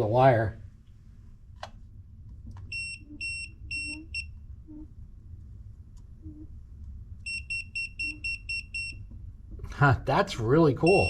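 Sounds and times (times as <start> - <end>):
voltage tester beeping: 2.7 - 4.8, 7.2 - 9.1, 10.8 - 11.0.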